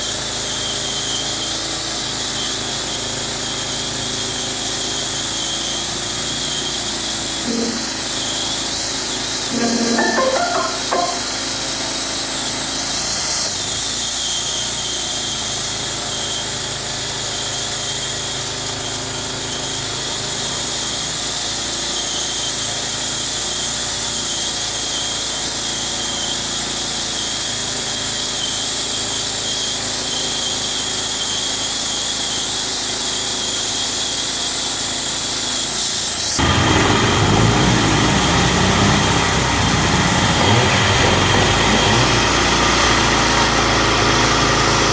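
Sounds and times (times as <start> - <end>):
wood-sawing machine running: 36.4 - 44.9.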